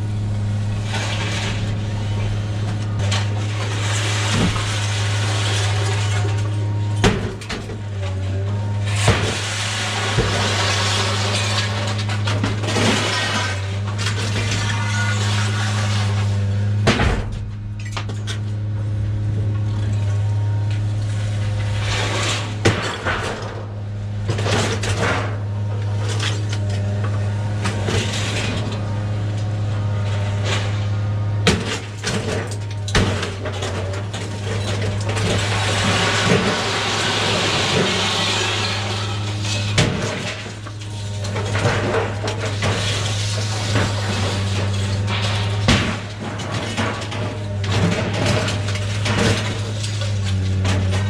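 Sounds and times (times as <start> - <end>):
steady low hum: 0.0 - 7.8
scrap metal clanking: 0.0 - 18.6, 19.4 - 51.0.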